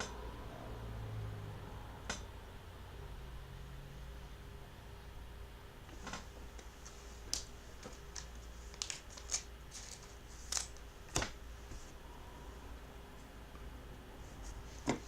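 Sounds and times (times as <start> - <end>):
trading cards clicking and rustling: 6.6 - 11.4.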